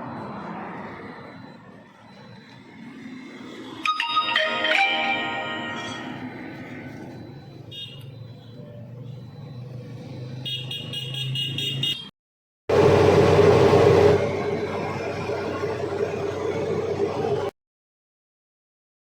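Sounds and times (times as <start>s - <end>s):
truck engine running: 12.7s - 17.5s.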